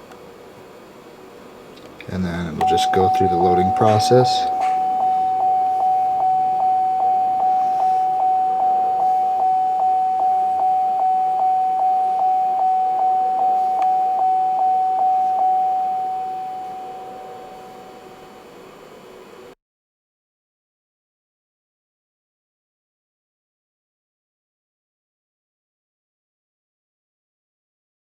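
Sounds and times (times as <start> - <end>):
dashboard warning chime dinging: 2.1 - 18.5.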